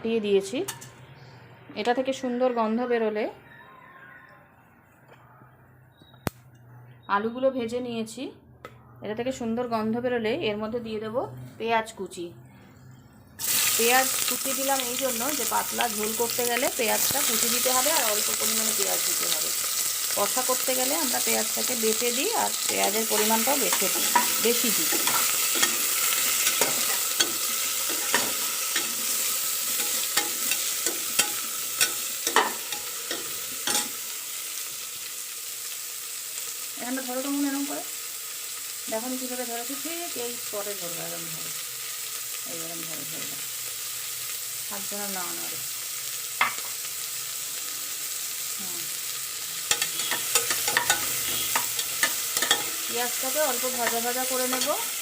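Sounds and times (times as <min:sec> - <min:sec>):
onion sizzling in hot oil: 0:13.4 - 0:55.0
spoon scraping a pot: 0:22.6 - 0:34.0, 0:49.7 - 0:52.9.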